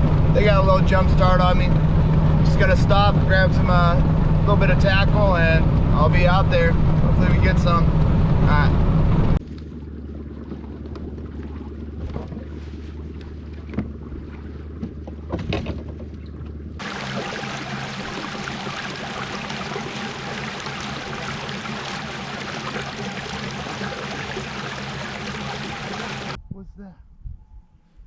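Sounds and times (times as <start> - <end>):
wind and water rushing: 0.0 - 9.4, 16.8 - 26.4
low motor drone: 0.0 - 26.6
steady low hum: 0.0 - 28.0.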